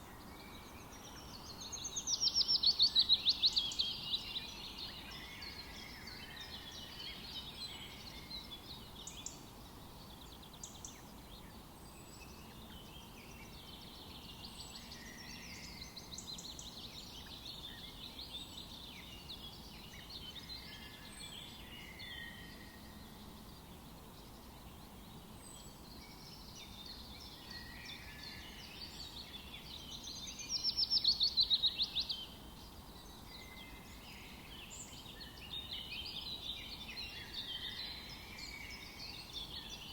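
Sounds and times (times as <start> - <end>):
faint background hiss: 0.0 - 39.9.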